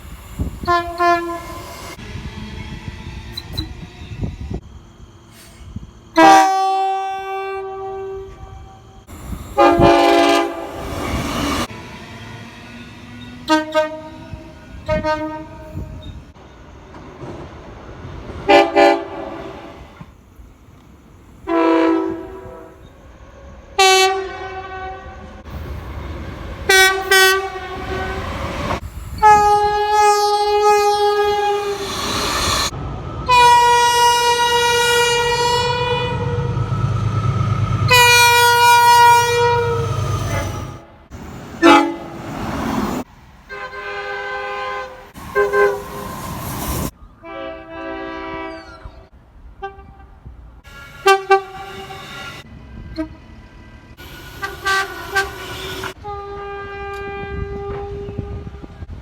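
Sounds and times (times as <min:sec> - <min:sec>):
rumble of passing trains: 0:00.0 - 0:59.0
train air horn blasts: 0:00.6 - 0:02.0, 0:06.2 - 0:08.9, 0:09.6 - 0:11.7, 0:13.4 - 0:16.0, 0:18.5 - 0:20.0, 0:21.4 - 0:22.9, 0:23.7 - 0:25.5, 0:26.6 - 0:32.7, 0:33.3 - 0:42.4, 0:43.5 - 0:49.0, 0:49.6 - 0:53.2, 0:54.0 - 0:58.9.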